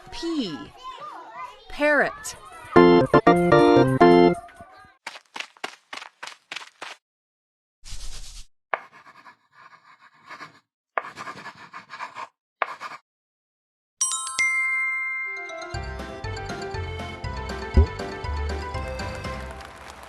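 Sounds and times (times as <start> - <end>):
pencil scribbling: 7.9 - 13.0
bright chime: 14.0 - 16.0.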